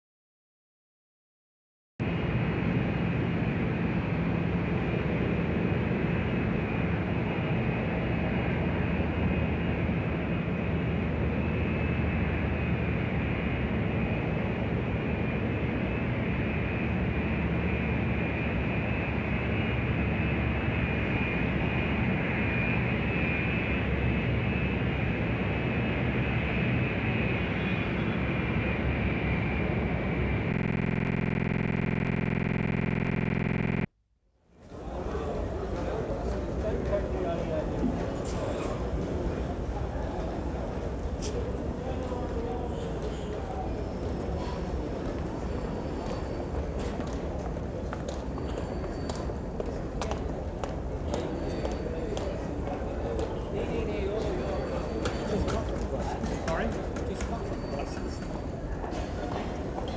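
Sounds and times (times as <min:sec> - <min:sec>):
low hum: 0:30.5 - 0:33.9.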